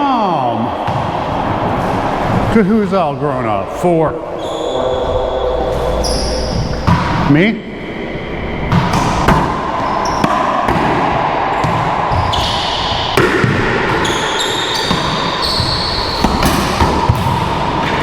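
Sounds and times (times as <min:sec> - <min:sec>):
racquetball strikes ringing: 0:06.4 - 0:07.3, 0:08.6 - 0:18.0.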